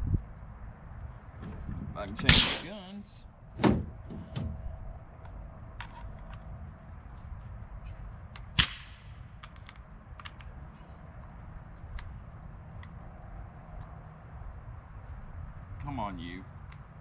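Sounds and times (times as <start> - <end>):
nail gun firing: 2.3 - 2.8, 8.6 - 9.1.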